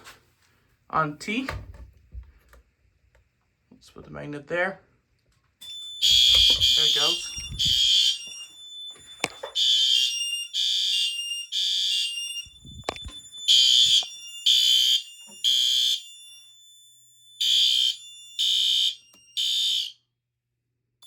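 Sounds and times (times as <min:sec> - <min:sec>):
fire alarm horn blasts: 0:05.6 - 0:20.1.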